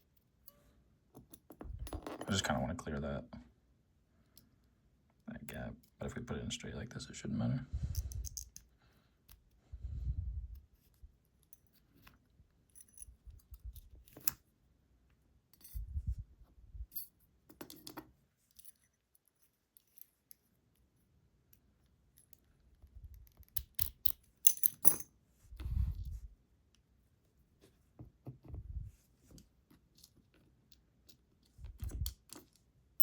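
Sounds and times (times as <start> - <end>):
metal lock parts clicking: 23.1 - 25.1.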